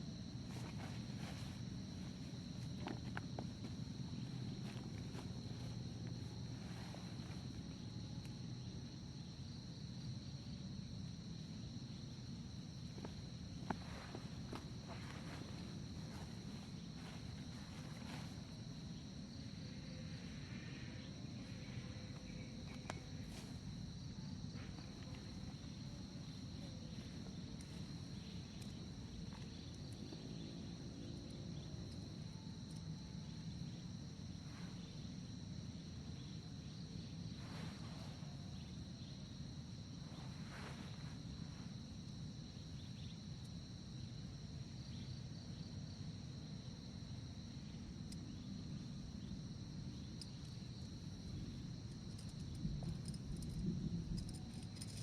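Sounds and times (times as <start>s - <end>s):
insects droning: 0.0s - 55.0s.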